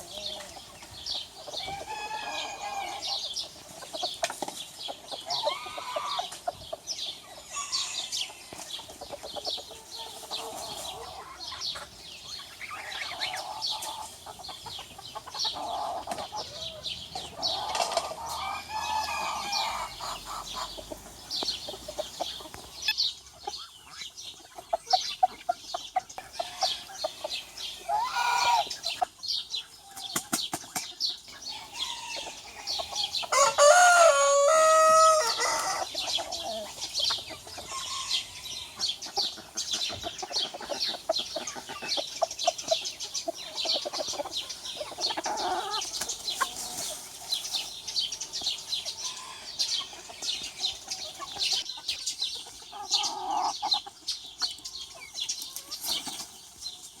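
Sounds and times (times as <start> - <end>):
chickens clucking: 0.0 - 57.0
rooster crowing: 1.7 - 3.1, 18.3 - 20.0, 31.5 - 35.9.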